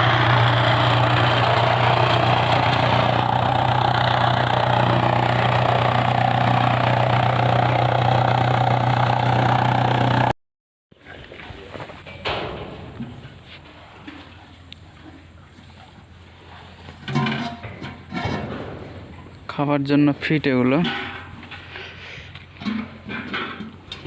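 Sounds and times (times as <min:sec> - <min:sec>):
machine motor humming: 0:00.0 - 0:10.3.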